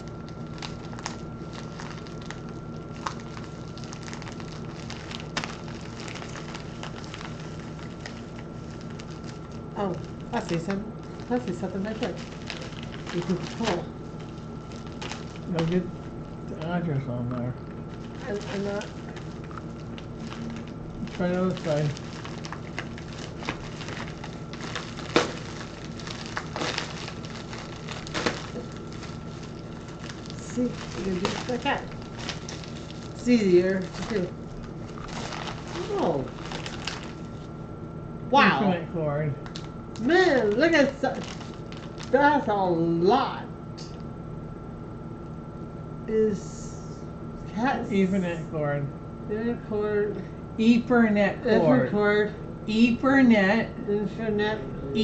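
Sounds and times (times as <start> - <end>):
packaging crackling: 0.0 - 16.7, 17.7 - 37.6, 39.4 - 42.2
background hum with high tone: 0.0 - 55.0.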